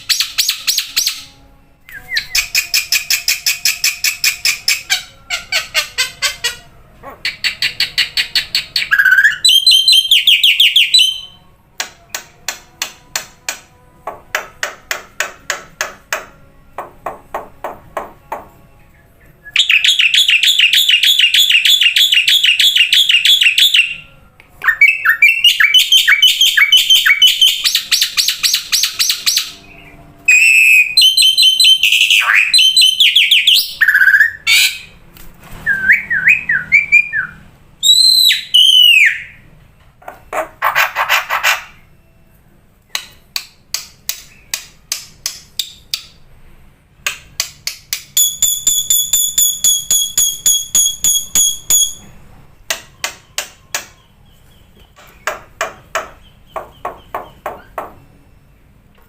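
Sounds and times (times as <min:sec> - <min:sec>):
songbird singing: 0:00.0 - 0:35.0, 0:35.6 - 0:46.3, 0:47.4 - 0:59.0.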